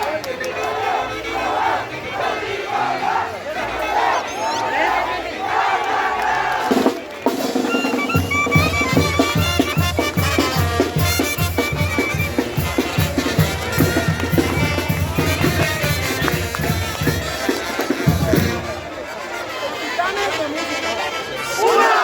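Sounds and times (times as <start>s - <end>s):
crowd shouting: 0.0s - 22.0s
fast steady drum beat: 6.6s - 18.8s
high melody line: 7.5s - 17.4s.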